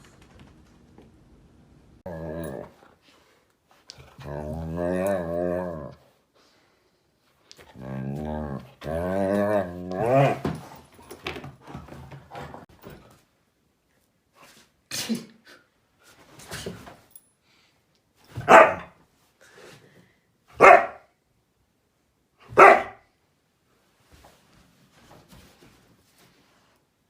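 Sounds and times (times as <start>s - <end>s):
dog barking: 18.4s - 19.0s, 20.6s - 21.1s, 22.5s - 23.1s.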